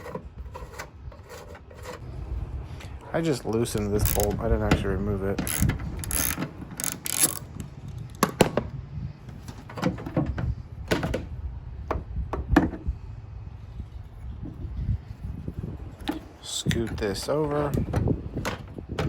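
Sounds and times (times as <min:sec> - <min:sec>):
tools and plastic parts clicking: 0:03.8 - 0:04.4, 0:05.4 - 0:08.6.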